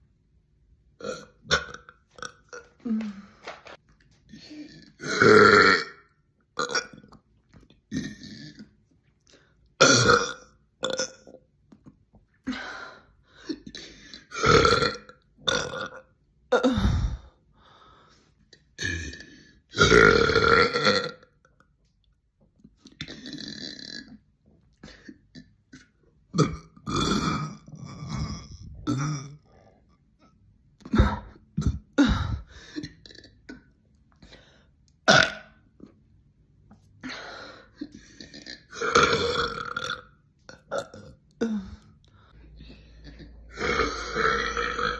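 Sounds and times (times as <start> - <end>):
women burping: 13.6 - 17.2, 26.3 - 29.5, 37.8 - 41.9, 43.0 - 44.9.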